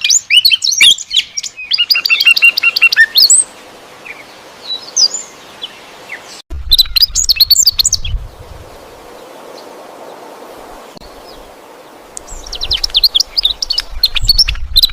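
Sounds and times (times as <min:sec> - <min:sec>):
small birds chirping: 0:00.0 - 0:10.3, 0:11.0 - 0:14.9
background hiss: 0:08.1 - 0:14.0.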